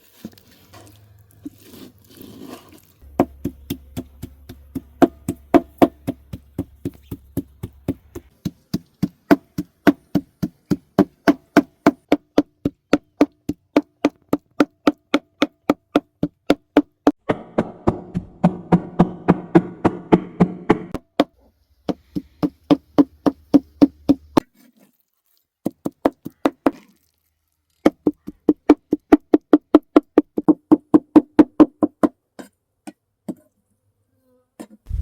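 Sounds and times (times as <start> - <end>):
knife chopping on wooden board: 3.0 - 14.4.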